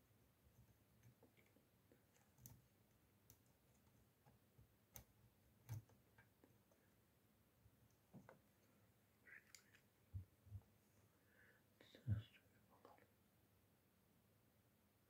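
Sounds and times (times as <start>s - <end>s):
faint clicks and taps: 0.5s - 7.0s, 7.8s - 10.8s.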